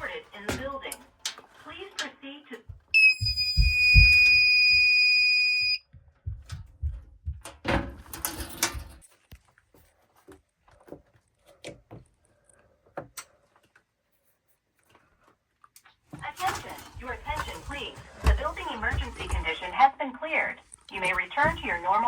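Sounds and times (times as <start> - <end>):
fire alarm high-pitched tone: 3.0 - 5.8.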